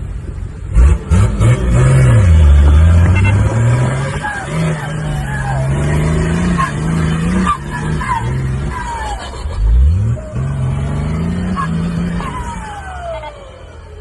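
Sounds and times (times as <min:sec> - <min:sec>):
engine revving: 0:00.7 - 0:14.0.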